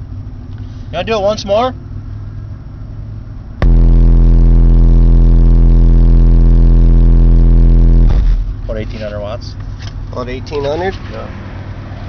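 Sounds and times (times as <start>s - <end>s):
low steady rumble: 0.0s - 10.6s
deep subwoofer test tone: 3.6s - 9.0s.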